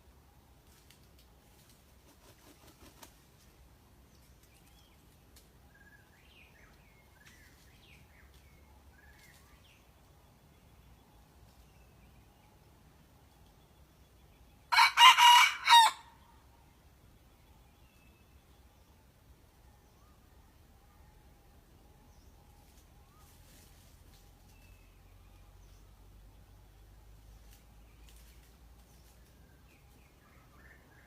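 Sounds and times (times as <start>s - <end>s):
rooster crowing: 14.7s - 16.2s.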